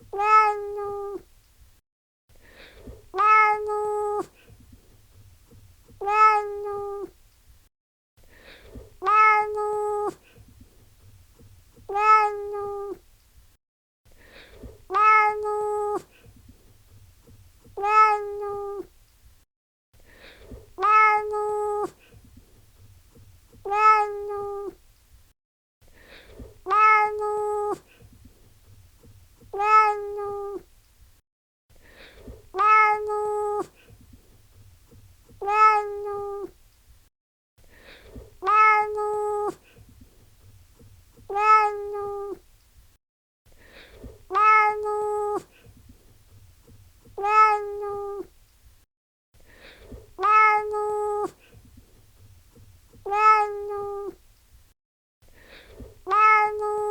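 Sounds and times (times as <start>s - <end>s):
cat meowing: 0.1s - 1.2s, 3.1s - 4.3s, 6.0s - 7.1s, 9.0s - 10.2s, 11.8s - 13.0s, 14.9s - 16.1s, 17.7s - 18.9s, 20.8s - 22.0s, 23.6s - 24.8s, 26.6s - 27.8s, 29.5s - 30.6s, 32.5s - 33.7s, 35.4s - 36.5s, 38.4s - 39.6s, 41.2s - 42.4s, 44.3s - 45.5s, 47.1s - 48.3s, 50.2s - 51.4s, 53.0s - 54.2s, 56.0s - 56.9s.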